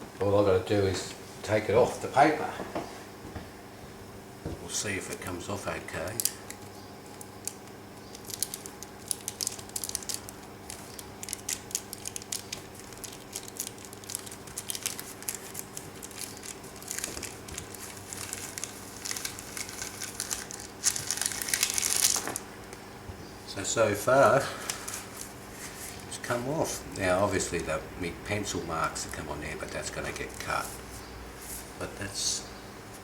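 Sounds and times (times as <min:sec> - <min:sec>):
baking paper crinkling: 0:05.1 - 0:22.8, 0:23.9 - 0:26.8, 0:29.4 - 0:30.8.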